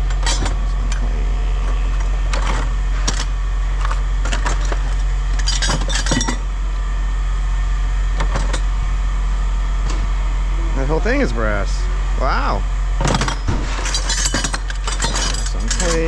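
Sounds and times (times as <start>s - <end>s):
scrap metal clinking and clattering: 0.0s - 1.1s, 1.9s - 6.4s, 13.1s - 16.0s
steady low hum: 0.0s - 16.0s.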